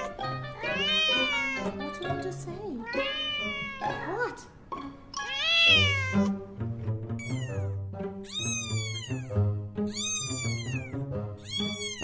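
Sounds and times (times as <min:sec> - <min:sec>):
cat meowing: 0:00.0 - 0:01.9, 0:02.8 - 0:04.4, 0:05.1 - 0:06.4, 0:07.2 - 0:12.0
background music: 0:00.0 - 0:12.0.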